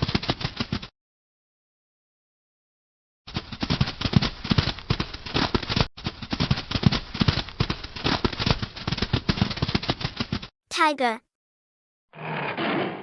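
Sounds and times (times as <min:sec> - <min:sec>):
lion growling: 0:12.2 - 0:13.0.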